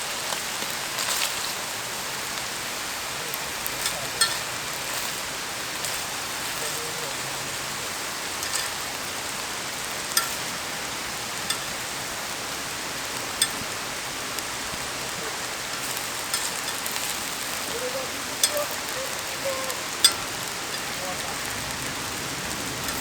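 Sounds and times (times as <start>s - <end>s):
steady rain hiss: 0.0s - 23.0s
sharp drip ticks: 8.2s - 23.0s.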